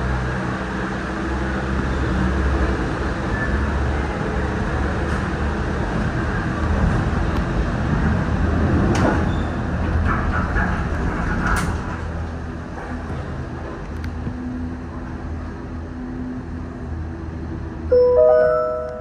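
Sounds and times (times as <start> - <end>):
gondola cable machinery rumble: 0.0 - 19.0.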